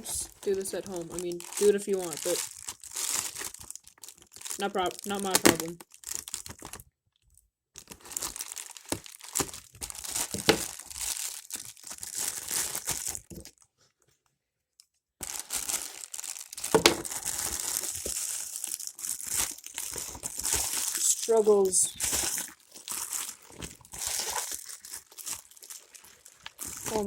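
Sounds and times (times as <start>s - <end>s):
package tearing and crinkling: 0.3s - 6.8s, 7.8s - 13.6s, 15.2s - 27.0s.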